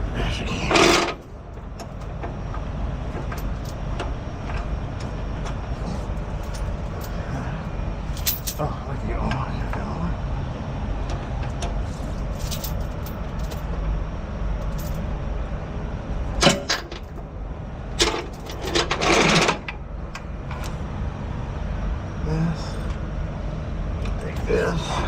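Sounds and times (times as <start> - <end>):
diesel truck engine idling: 0.0 - 25.0
metal tools clanking: 0.7 - 2.2, 16.4 - 17.2, 18.0 - 19.7.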